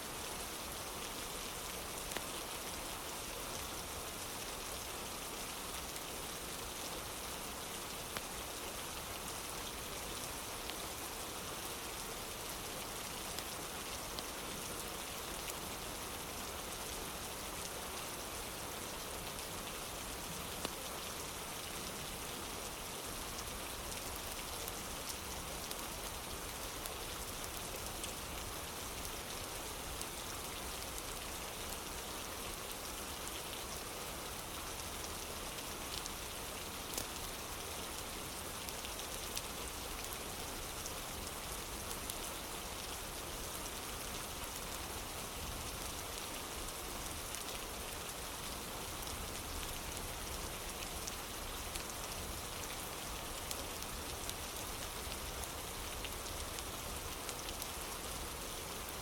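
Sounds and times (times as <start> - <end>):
rain on a wooden porch: 0.0 - 59.0
small sharp ticks: 2.1 - 2.3.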